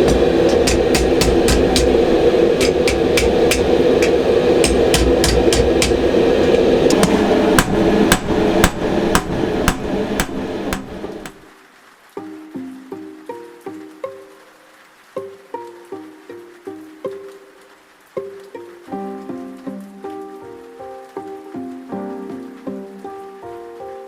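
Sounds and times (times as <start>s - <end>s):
hammer striking steel sheet: 0.0s - 11.5s.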